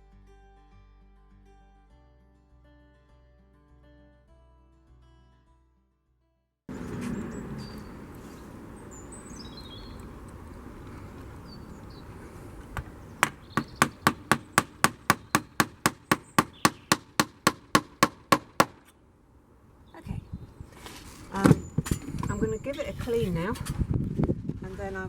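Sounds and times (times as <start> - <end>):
faint bird chirps: 7.0 - 10.2
small hammer tapping: 12.8 - 19.0.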